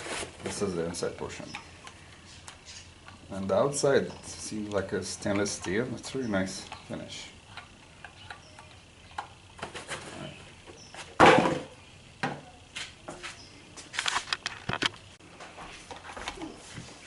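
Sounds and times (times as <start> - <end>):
thump: 11.2 - 12.4.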